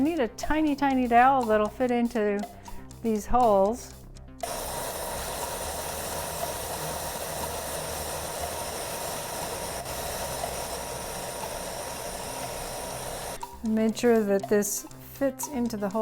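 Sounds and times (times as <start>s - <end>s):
power tool running: 4.4s - 13.4s.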